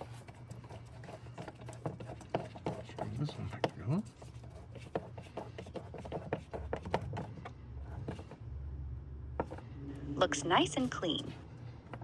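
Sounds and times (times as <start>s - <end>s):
low hum: 8.4s - 12.0s.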